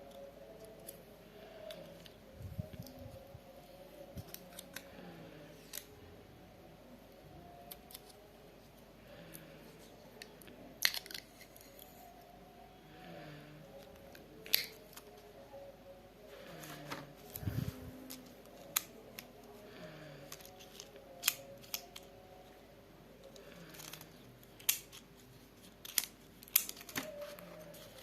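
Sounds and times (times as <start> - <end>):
packaging clicks: 1.6 - 3.0, 4.1 - 4.9, 5.6 - 5.9, 10.1 - 11.9, 13.7 - 15.3, 16.6 - 19.5, 20.2 - 22.2, 23.3 - 28.0.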